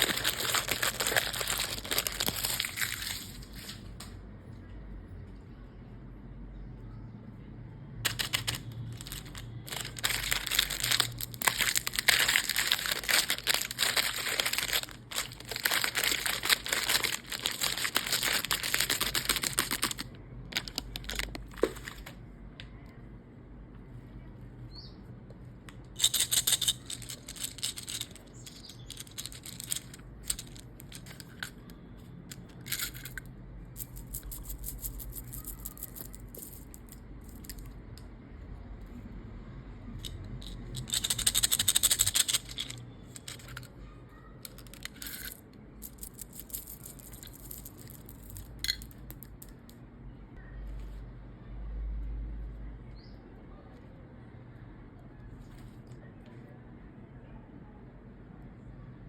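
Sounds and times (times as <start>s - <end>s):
plastic wrapper crinkling: 0.0s - 3.8s, 8.1s - 22.2s, 26.0s - 31.6s, 40.8s - 43.6s.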